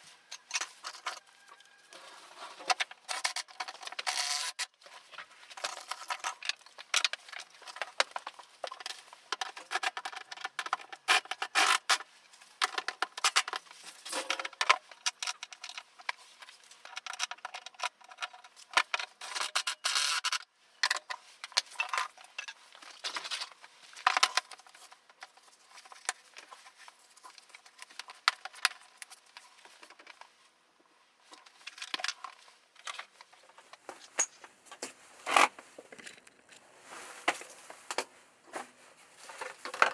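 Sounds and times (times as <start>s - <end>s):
small hard objects clicking and rattling: 2.6s - 30.3s.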